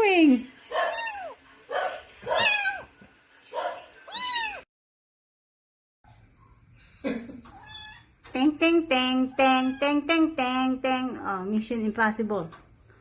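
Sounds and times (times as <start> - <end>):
kitten meowing: 0.9 - 1.4, 2.4 - 2.9, 4.1 - 4.6, 7.6 - 8.0.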